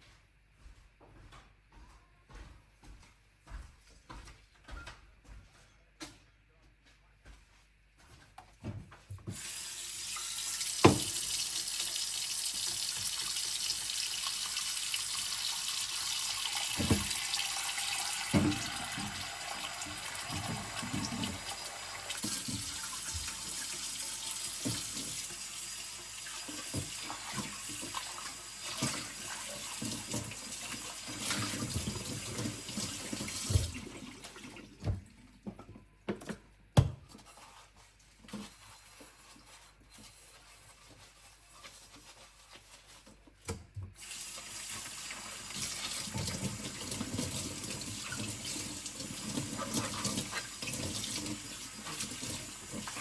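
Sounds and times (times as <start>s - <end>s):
tap running into a sink: 10.1s - 14.4s, 16.2s - 25.5s, 26.1s - 33.9s.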